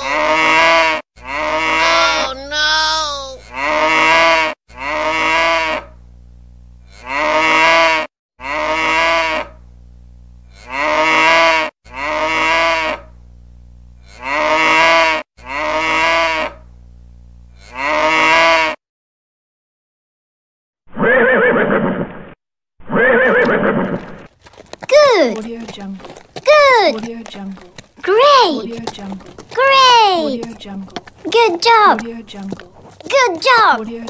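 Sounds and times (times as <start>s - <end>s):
cow mooing ringtone: 6.9s - 9.4s.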